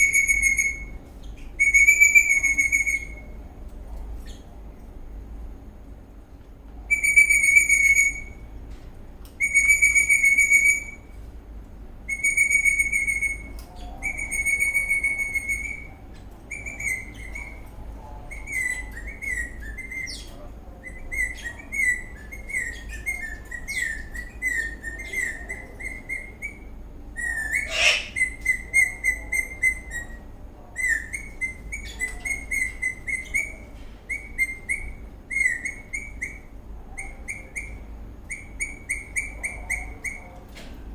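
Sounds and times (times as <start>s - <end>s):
parrot whistling and chirping: 20.9s - 30.2s.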